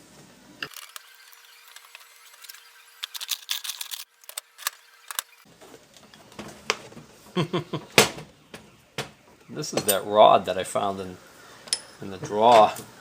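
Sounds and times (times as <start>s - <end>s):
metal parts clicking and clinking: 0.6s - 5.4s.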